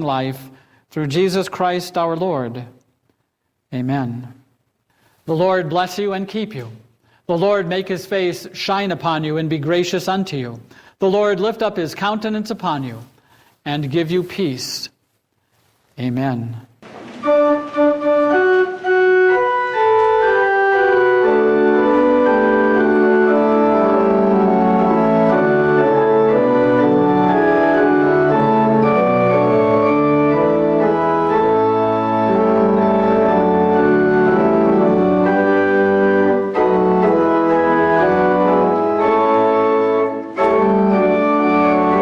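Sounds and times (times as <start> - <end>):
church organ playing chords: 16.9 - 42.0.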